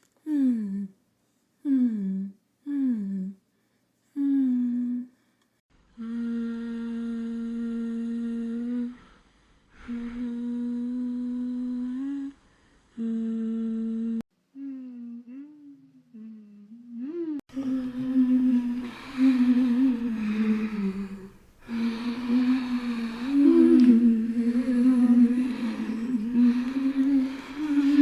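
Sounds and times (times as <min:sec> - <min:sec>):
person humming: 0:00.2 - 0:00.9, 0:01.6 - 0:03.4, 0:04.2 - 0:05.1, 0:06.0 - 0:09.0, 0:09.8 - 0:12.4, 0:13.0 - 0:28.0.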